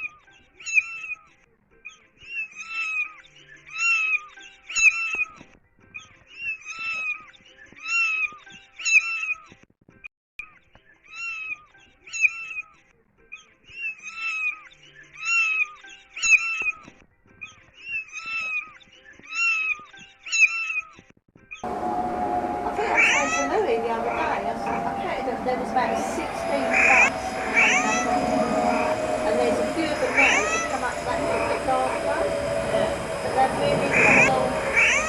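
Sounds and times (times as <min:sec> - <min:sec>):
cat meowing: 0:02.3 - 0:05.4, 0:06.4 - 0:09.4, 0:13.8 - 0:14.6, 0:17.9 - 0:21.0, 0:22.8 - 0:23.6, 0:26.7 - 0:28.0, 0:34.0 - 0:35.0.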